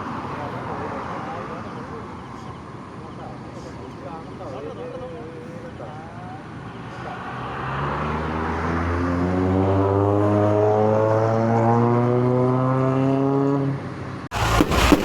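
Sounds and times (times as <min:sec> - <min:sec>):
engine droning hum: 0:00.0 - 0:13.8
rough crackling noise: 0:14.3 - 0:15.0.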